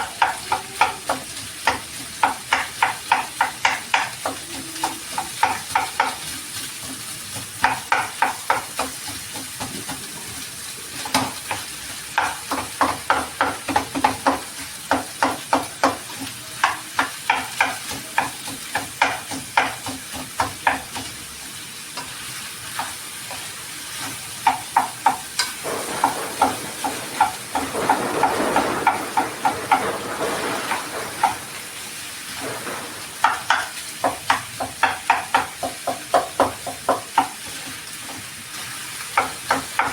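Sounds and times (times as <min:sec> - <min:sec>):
food sizzling: 0:00.0 - 0:39.9
utensil scraping a pan: 0:22.0 - 0:39.9.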